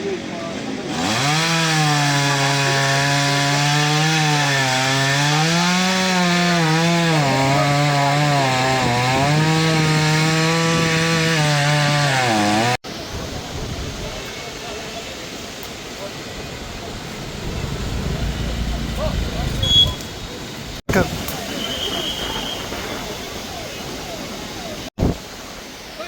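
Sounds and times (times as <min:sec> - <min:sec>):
chainsaw cutting wood: 0:00.9 - 0:12.8.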